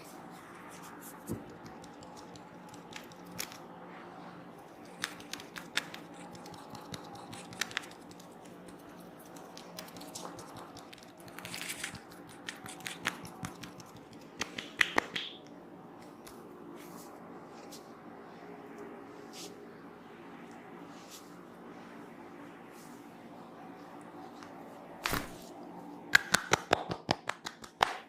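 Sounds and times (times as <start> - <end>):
hair rustle: 0.0 - 14.9, 16.0 - 26.0
faint steady hum: 0.0 - 27.9
hands clicking and snapping on head: 1.3 - 3.6, 4.8 - 16.4, 26.1 - 28.0.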